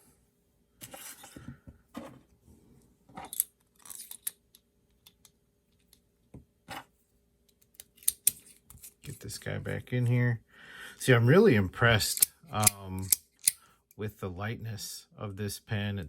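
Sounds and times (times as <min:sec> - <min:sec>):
metal parts clicking and clinking: 0:03.2 - 0:04.4, 0:12.0 - 0:13.6.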